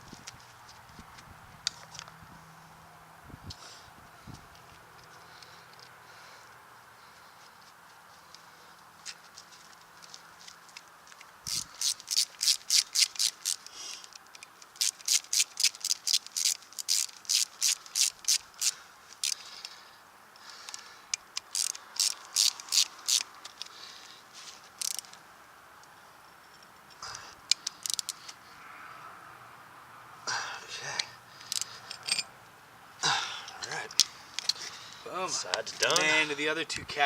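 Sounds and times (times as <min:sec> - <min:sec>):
socket ratchet clicking: 0:11.5 - 0:13.7, 0:14.3 - 0:19.4, 0:21.2 - 0:23.7, 0:24.8 - 0:25.1, 0:27.5 - 0:28.4, 0:31.0 - 0:32.3.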